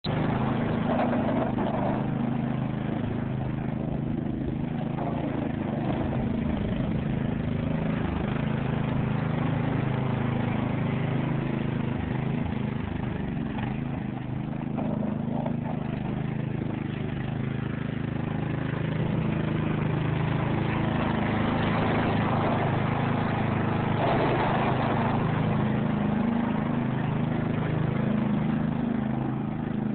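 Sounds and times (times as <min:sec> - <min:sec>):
lawn mower engine running: 0:00.0 - 0:29.9.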